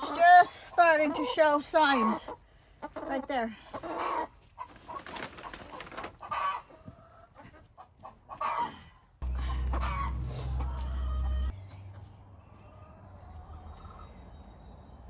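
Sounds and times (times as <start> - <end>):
hen squawking and clucking: 0.0 - 11.6.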